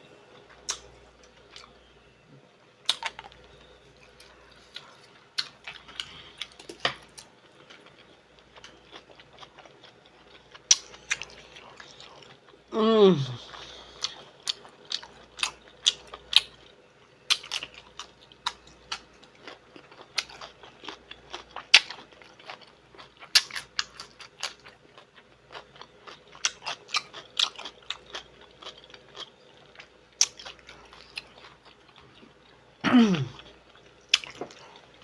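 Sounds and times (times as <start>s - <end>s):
person chewing and biting food: 17.3s - 24.8s, 25.5s - 32.0s, 33.2s - 35.0s.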